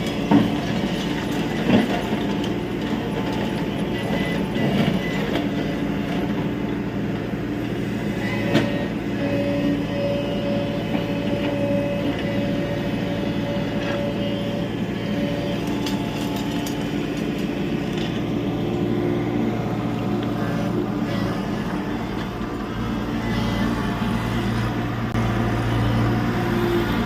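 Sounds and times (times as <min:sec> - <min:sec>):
demolition debris clatter: 0:00.0 - 0:06.4, 0:15.3 - 0:18.4
excavator diesel hum: 0:00.0 - 0:27.0.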